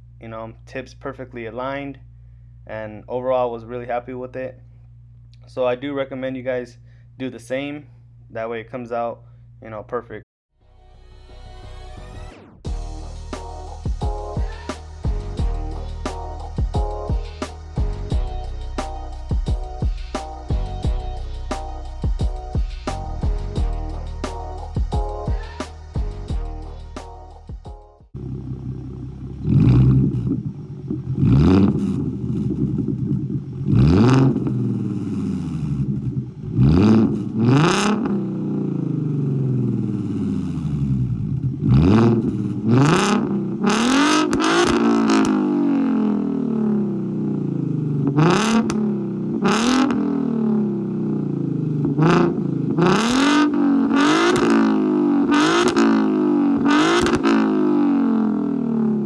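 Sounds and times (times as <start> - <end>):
car engine revving: 28.2 - 59.0.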